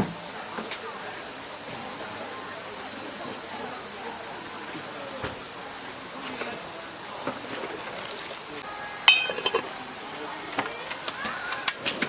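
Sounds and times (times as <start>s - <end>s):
insects buzzing: 0.0s - 12.0s
faint clicks of tableware: 9.1s - 9.8s.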